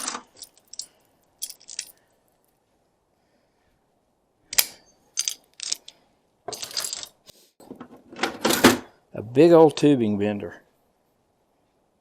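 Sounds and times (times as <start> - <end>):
metal tools clinking: 0.0 - 2.6, 4.5 - 7.2.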